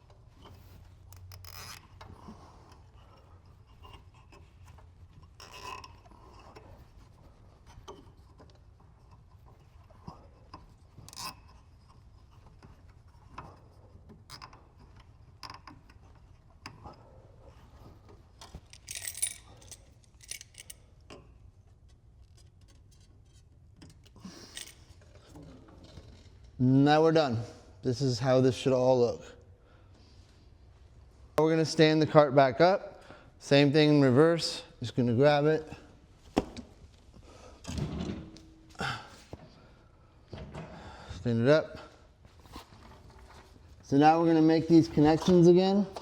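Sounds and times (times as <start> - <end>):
clicks and rubbing of wires: 0.0 - 26.6, 42.2 - 46.0
plastic cable tie ratcheting: 1.0 - 2.1.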